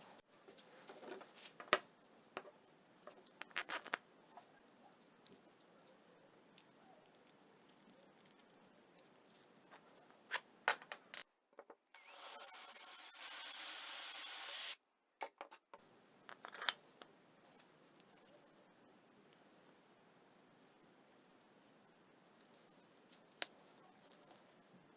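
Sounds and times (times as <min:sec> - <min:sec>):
power tool whining: 0:12.0 - 0:14.8.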